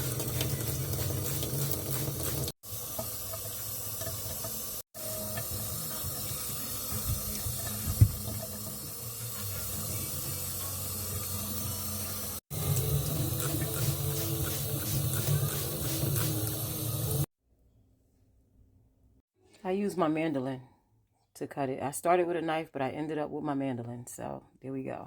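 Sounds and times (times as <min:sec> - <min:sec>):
tap water running into sink: 0:00.0 - 0:17.3.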